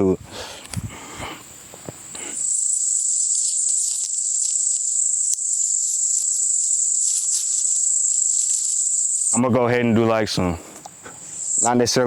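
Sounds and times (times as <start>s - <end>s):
insects buzzing: 0.0s - 12.0s.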